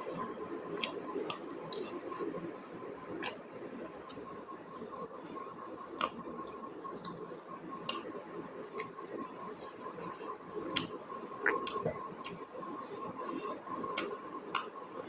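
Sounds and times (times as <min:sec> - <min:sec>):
faint high hum: 0:00.0 - 0:15.0
wet chewing: 0:00.8 - 0:03.4, 0:10.0 - 0:14.7.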